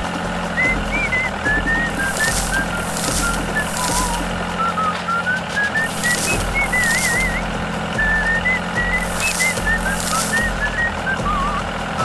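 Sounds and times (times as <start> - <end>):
hiss: 0.0 - 12.0
whistled tune: 0.0 - 12.0.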